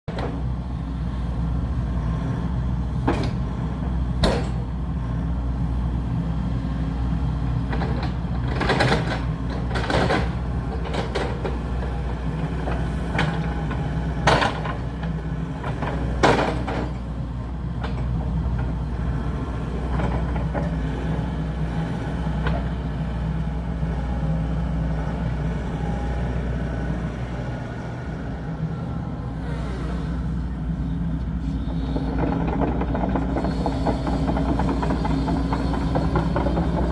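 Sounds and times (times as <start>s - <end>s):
earthmoving machine engine running: 0.2s - 36.9s.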